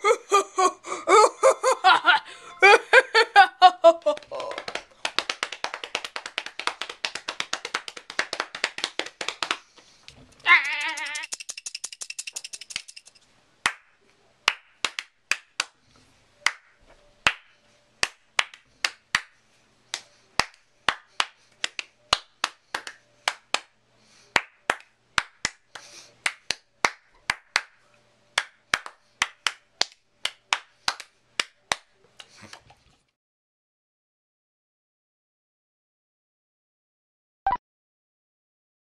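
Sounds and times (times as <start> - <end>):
person making buzzy tone: 10.4 - 11.4
sharp mouth clicks: 10.6 - 13.1.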